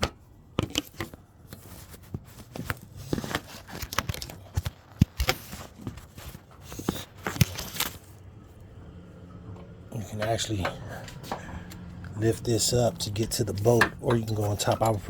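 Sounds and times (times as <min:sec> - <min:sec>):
metal parts clicking and knocking: 0:00.0 - 0:01.2.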